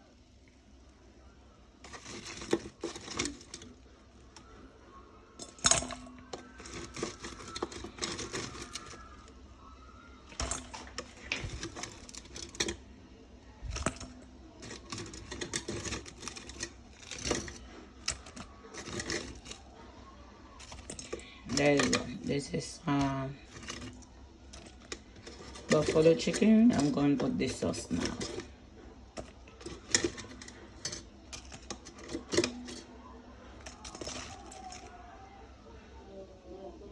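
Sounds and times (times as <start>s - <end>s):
kitchen utensils and dishes clattering: 1.8s - 3.8s, 5.4s - 9.3s, 10.3s - 12.8s, 13.7s - 19.8s, 20.6s - 33.0s, 33.6s - 35.0s.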